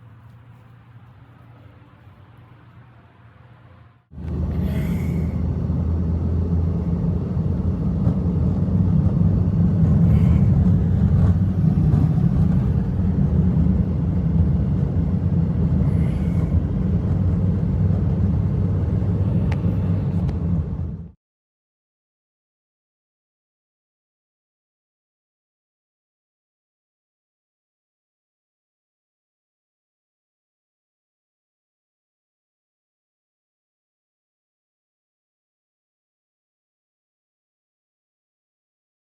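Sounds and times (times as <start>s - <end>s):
wind buffeting microphone: 4.2s - 21.1s.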